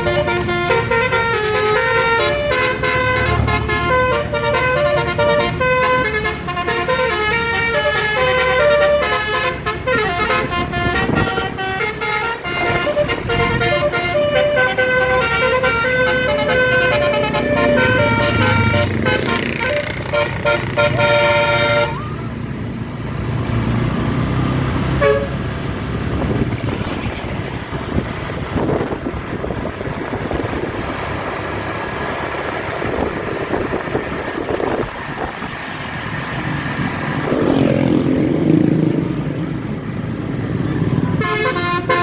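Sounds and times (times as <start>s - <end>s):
bus air horn playing a tune: 0.0s - 22.3s, 24.8s - 25.5s, 41.0s - 42.0s
engine and road noise: 0.0s - 42.0s
short horn toot: 0.1s - 22.1s, 25.0s - 25.4s.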